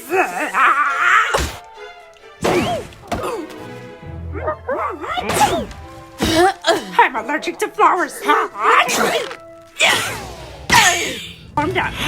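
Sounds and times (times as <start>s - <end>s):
cartoon music: 4.0s - 5.8s.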